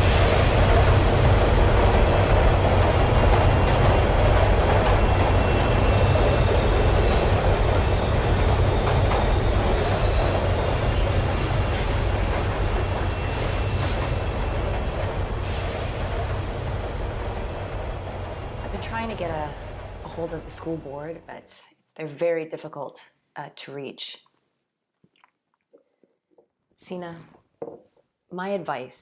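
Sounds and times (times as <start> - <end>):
train rumbling on rails: 0.0 - 20.9
high-pitched wheel squeal: 8.7 - 15.0.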